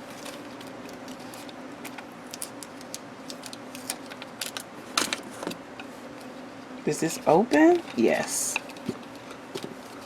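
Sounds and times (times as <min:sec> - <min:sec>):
packaging clicking and rustling: 0:00.1 - 0:05.6.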